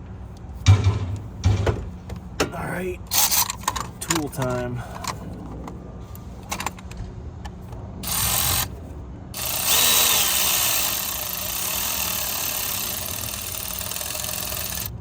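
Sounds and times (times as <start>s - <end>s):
power driver driving screws: 9.4s - 14.9s.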